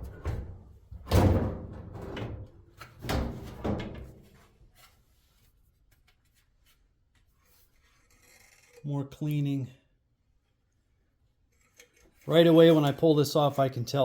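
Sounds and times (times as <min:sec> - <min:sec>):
sheet metal clunks and scraping: 0:00.0 - 0:04.5.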